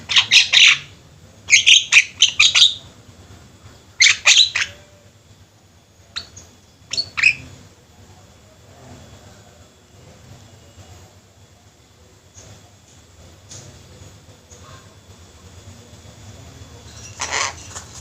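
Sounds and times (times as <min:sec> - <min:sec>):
mynas calling: 0:00.0 - 0:03.0, 0:04.0 - 0:05.2, 0:06.1 - 0:07.7, 0:16.9 - 0:17.8.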